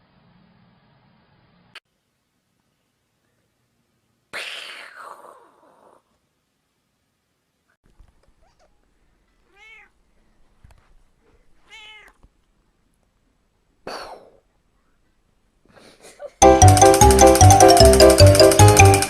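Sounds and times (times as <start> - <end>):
cat meowing: 8.4 - 10.0, 11.5 - 12.3.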